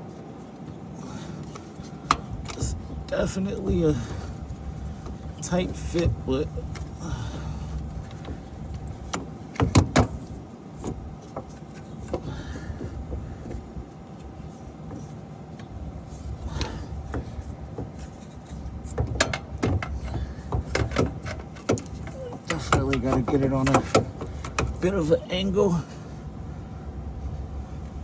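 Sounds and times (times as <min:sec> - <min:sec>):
steady low rumble: 0:00.0 - 0:28.0
sharp metal knocks and clicks: 0:07.7 - 0:13.6, 0:16.6 - 0:24.9.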